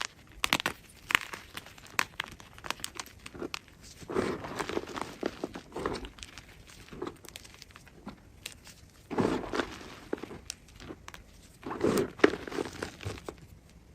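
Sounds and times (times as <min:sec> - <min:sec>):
chalk block crunching: 0:00.0 - 0:13.7
small crackles and clicks: 0:00.0 - 0:13.9.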